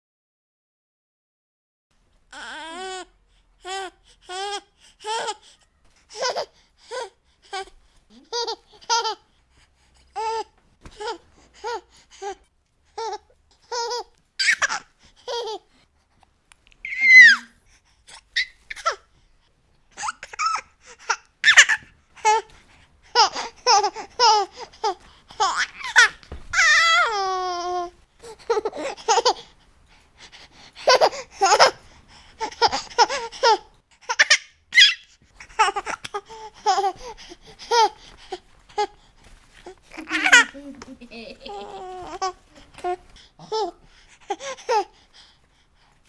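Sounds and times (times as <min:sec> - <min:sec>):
baby laughing: 0:06.1 - 0:06.5, 0:08.1 - 0:09.2, 0:13.0 - 0:15.7, 0:16.9 - 0:17.5, 0:19.9 - 0:22.5, 0:23.1 - 0:29.5, 0:30.8 - 0:31.8, 0:32.4 - 0:39.0, 0:39.9 - 0:44.9
baby squealing: 0:14.4 - 0:14.8, 0:16.8 - 0:17.5, 0:21.4 - 0:21.8, 0:25.4 - 0:27.6, 0:34.2 - 0:35.1.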